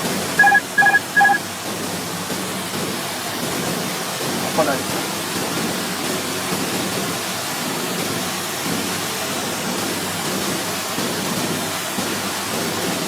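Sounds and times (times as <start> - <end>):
airflow in cockpit: 0.0 - 13.0.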